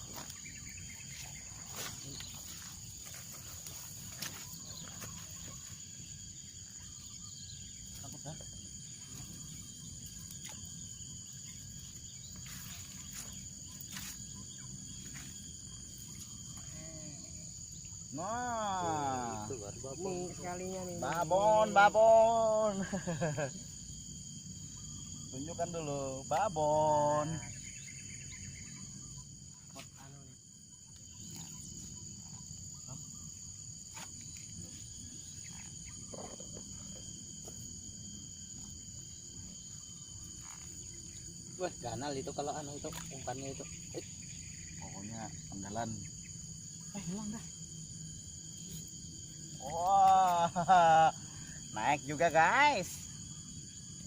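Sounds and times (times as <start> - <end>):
high-pitched insect chorus: 0.0 - 54.0.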